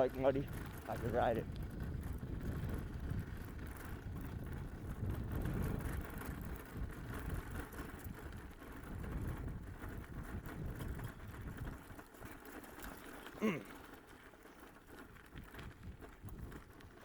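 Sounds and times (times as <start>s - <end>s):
wind on microphone: 0.0s - 11.9s
bicycle rolling: 0.0s - 17.0s.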